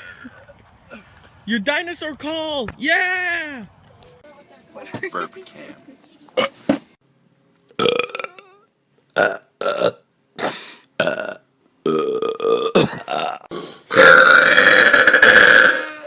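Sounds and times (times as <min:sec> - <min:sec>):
person burping: 0:07.8 - 0:16.0.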